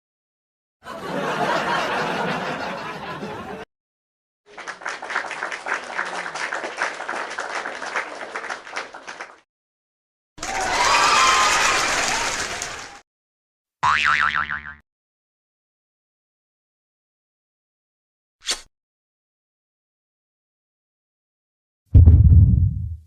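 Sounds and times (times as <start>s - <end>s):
crowd laughing: 0.8s - 3.7s, 4.5s - 9.3s
applause: 4.5s - 9.5s, 10.4s - 13.0s.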